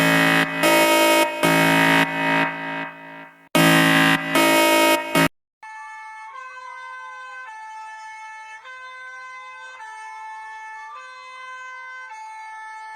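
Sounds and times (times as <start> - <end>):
slow wailing siren tone: 0.0 - 5.3
two-tone electronic siren: 0.0 - 5.3.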